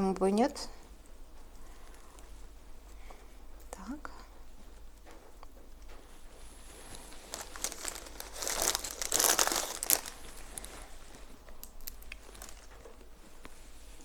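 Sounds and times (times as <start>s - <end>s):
dried flowers crinkling: 6.1s - 13.7s.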